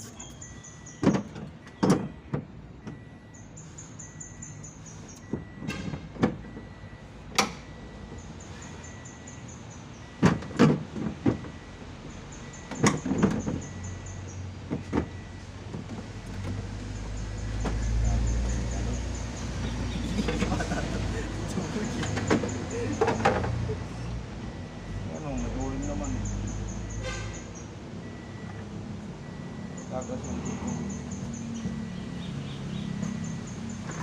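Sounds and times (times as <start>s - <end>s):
knocks and clanks of tools: 1.0s - 3.1s, 5.2s - 8.2s, 10.2s - 11.6s, 12.7s - 13.8s, 14.7s - 16.7s, 21.8s - 23.8s.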